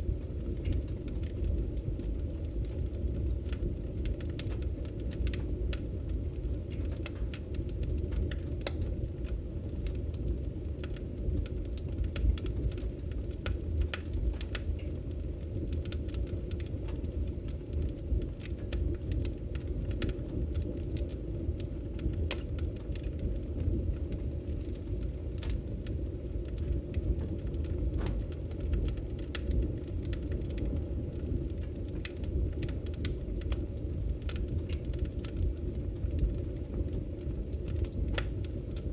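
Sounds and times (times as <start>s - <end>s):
fire crackling and popping: 0.0s - 38.9s
fire flames rumbling: 0.0s - 38.9s.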